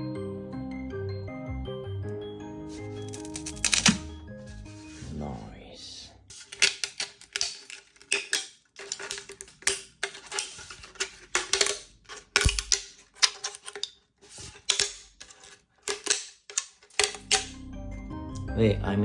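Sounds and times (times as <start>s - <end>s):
plastic crunching and crackling: 6.3s - 17.4s.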